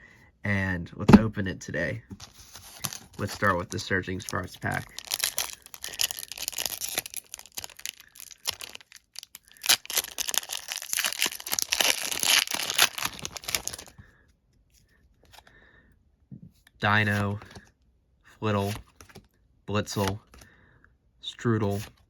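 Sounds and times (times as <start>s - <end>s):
foil wrapper tearing and crinkling: 2.2s - 13.9s.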